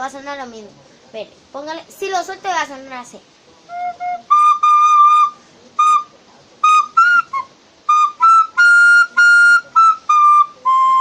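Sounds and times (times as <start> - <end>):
recorder playing high notes: 3.7 - 11.0.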